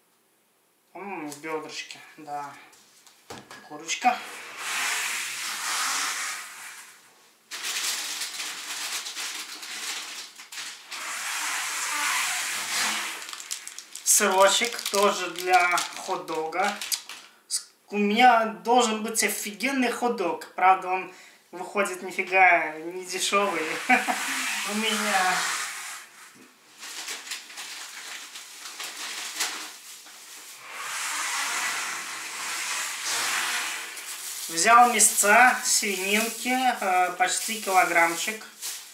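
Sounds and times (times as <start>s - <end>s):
plastic bags crinkling: 7.5s - 17.4s, 26.7s - 30.8s, 33.0s - 38.9s.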